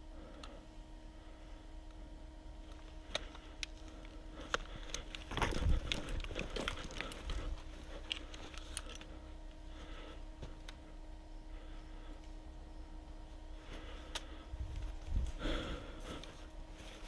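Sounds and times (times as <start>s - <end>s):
rustling and crackling: 2.7s - 9.2s.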